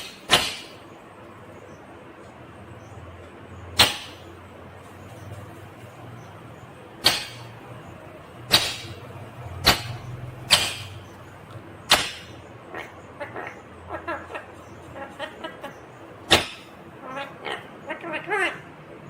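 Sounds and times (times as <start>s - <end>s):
parakeet chattering calls: 6.2s - 18.7s.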